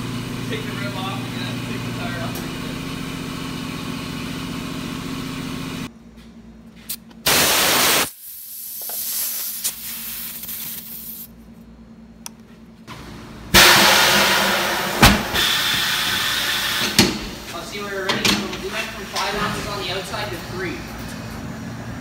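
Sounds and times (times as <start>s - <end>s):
steady machine hum: 0.0s - 8.2s, 10.0s - 22.0s
compressed air hissing: 7.3s - 11.3s, 13.6s - 17.4s.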